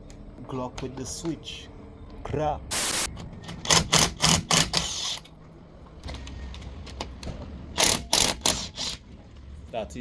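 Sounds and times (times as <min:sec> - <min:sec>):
impact wrench bursts: 0:02.7 - 0:05.3, 0:07.7 - 0:09.0.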